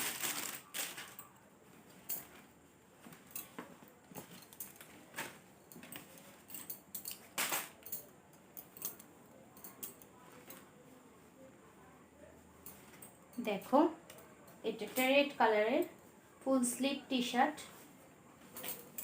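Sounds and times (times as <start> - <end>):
plastic package rustling and clicking: 0.0 - 1.4.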